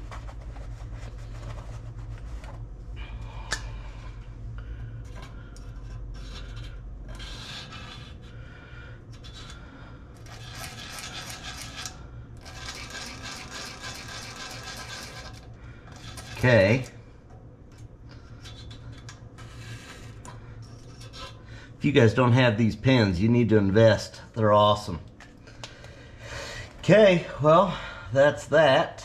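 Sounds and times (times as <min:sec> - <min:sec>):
low steady hum: 0:00.0 - 0:29.0
scraping on metal: 0:05.0 - 0:17.0, 0:18.1 - 0:21.5.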